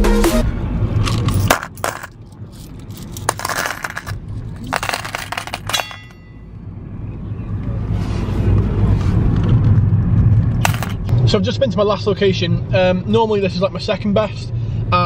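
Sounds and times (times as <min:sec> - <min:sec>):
coins clinking and rattling: 0:01.0 - 0:06.3, 0:10.6 - 0:11.1.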